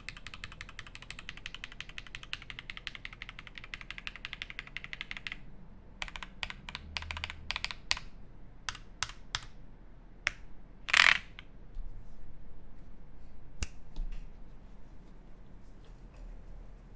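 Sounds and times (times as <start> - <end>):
mechanical keyboard typing: 0.0 - 5.4, 6.0 - 9.6, 10.9 - 11.4.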